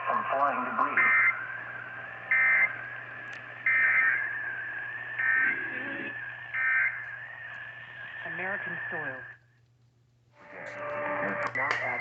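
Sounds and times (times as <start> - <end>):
high whine: 0.0 - 9.4
low electrical hum: 0.0 - 12.0
electronic alarm beeping: 1.0 - 1.4, 2.3 - 2.7, 3.6 - 4.4, 6.5 - 7.0.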